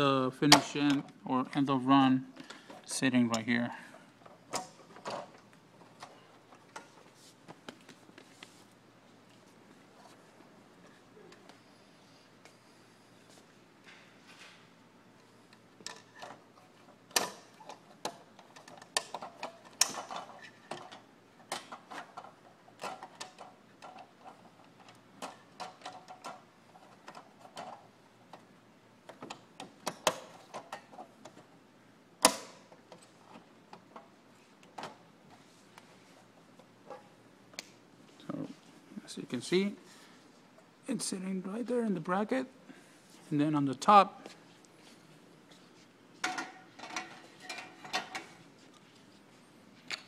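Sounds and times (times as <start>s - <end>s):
panel parts clicking and knocking: 17.1s - 28.4s.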